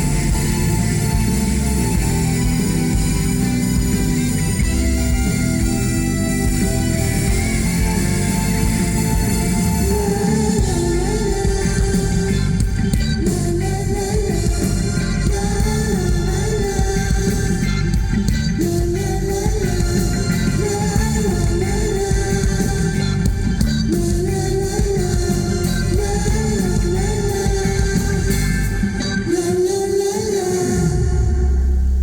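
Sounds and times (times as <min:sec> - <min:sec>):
band playing bass and drums: 0:00.0 - 0:29.5
person singing: 0:06.5 - 0:31.8.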